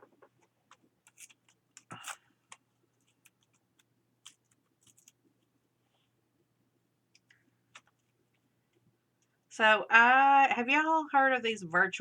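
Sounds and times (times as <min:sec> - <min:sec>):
paper rustling: 0:01.0 - 0:05.5.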